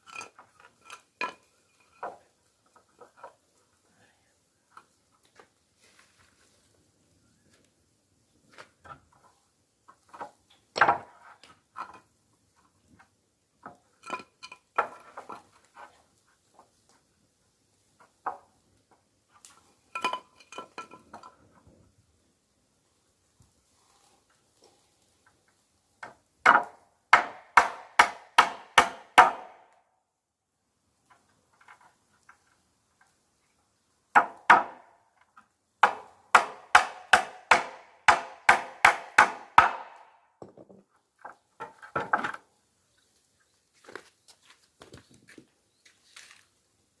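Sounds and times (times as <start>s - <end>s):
hammer striking wood: 26.4s - 29.7s, 34.2s - 34.9s, 35.8s - 40.7s.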